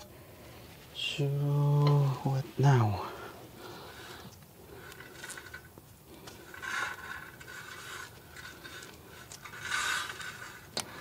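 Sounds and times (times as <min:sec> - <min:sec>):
brake rotor scraping: 0:03.7 - 0:11.0.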